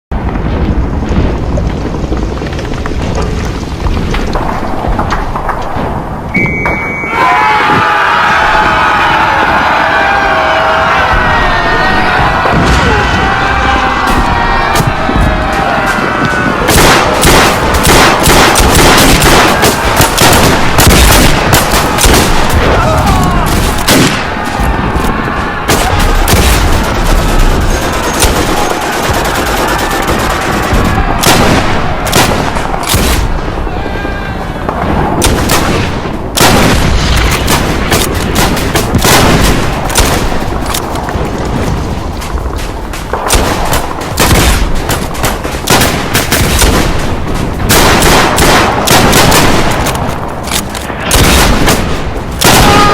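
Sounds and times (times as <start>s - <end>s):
explosion booms: 0.1s - 6.9s, 7.5s - 29.3s, 30.0s - 33.7s, 34.6s - 52.9s
men yelling: 7.1s - 16.7s, 21.7s - 23.6s
rifle and machine-gun fire: 12.4s - 33.5s, 34.8s - 52.9s.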